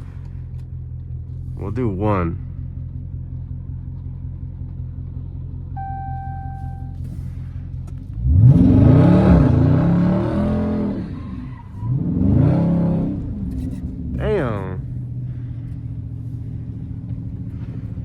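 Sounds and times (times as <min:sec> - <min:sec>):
car engine idling: 0:00.0 - 0:18.0
dashboard chime: 0:05.8 - 0:07.0
car engine revving hard: 0:08.2 - 0:13.6.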